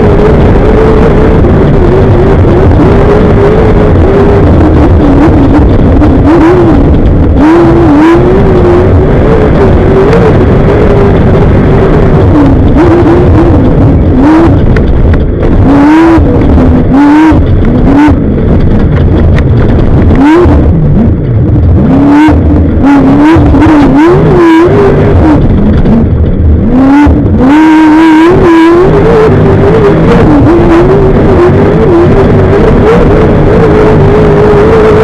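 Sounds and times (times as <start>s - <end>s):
race vehicle engine revving: 0.0s - 35.0s
wind noise: 0.0s - 35.0s
chassis rattle with knocks: 12.6s - 22.0s.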